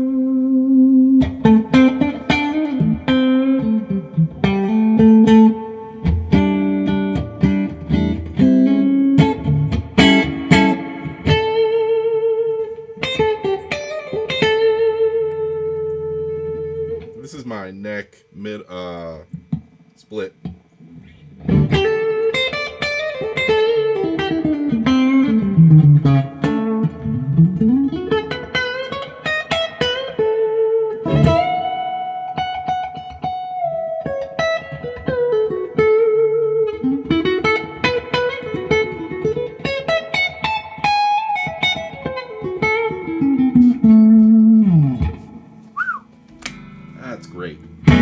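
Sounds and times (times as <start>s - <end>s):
electric guitar melodic lines: 0.0s - 17.6s, 20.8s - 48.0s.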